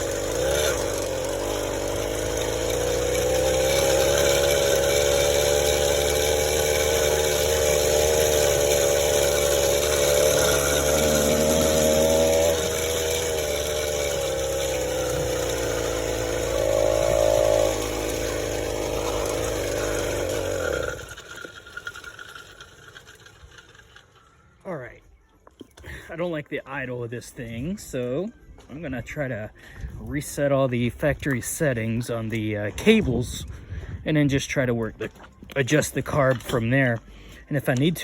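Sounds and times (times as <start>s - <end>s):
small engine running: 0.0s - 24.7s.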